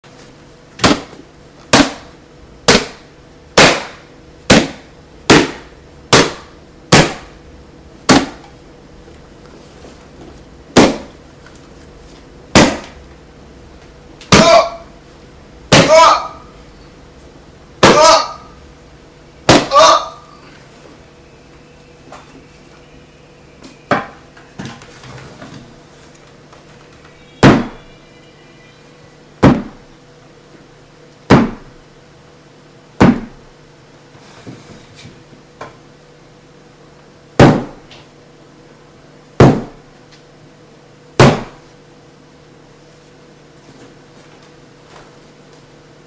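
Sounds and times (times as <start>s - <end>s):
faint steady hum: 0.0s - 46.0s
loud sharp knocks: 0.8s - 2.1s, 2.7s - 7.3s, 8.1s - 8.4s, 10.8s - 11.1s, 12.5s - 13.0s, 14.3s - 14.7s, 15.7s - 16.2s, 17.8s - 18.3s, 19.5s - 19.9s, 27.4s - 27.9s, 29.4s - 29.8s, 31.3s - 31.7s, 33.0s - 33.4s, 37.4s - 37.8s, 39.4s - 39.8s, 41.2s - 41.6s.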